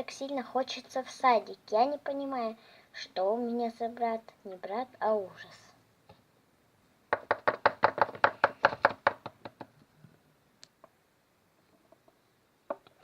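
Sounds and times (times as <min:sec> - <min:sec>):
sharp taps on a hard surface: 0:07.1 - 0:09.7.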